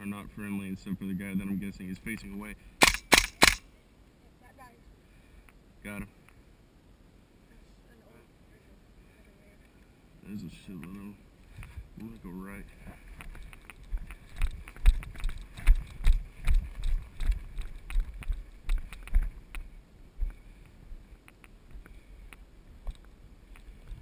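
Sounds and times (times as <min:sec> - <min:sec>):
gear jostling against camera: 0:11.6 - 0:19.6
running footsteps: 0:12.8 - 0:21.9.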